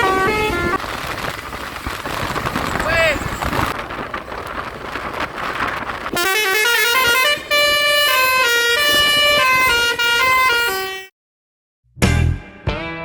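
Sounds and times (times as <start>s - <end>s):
bus horns playing a multi-note melody: 0.0s - 0.8s, 6.1s - 11.1s
traffic noise: 0.0s - 11.0s.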